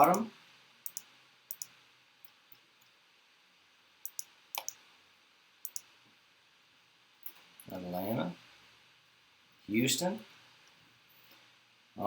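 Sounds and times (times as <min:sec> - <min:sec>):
computer mouse clicks: 0:00.0 - 0:00.2, 0:00.8 - 0:02.4, 0:04.0 - 0:04.8, 0:05.6 - 0:05.9.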